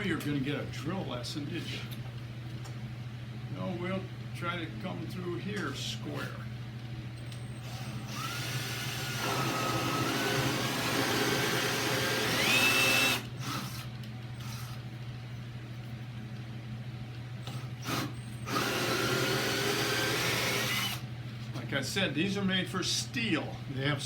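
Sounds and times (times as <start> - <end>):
electric drill whining: 7.6 - 14.8, 17.5 - 21.0.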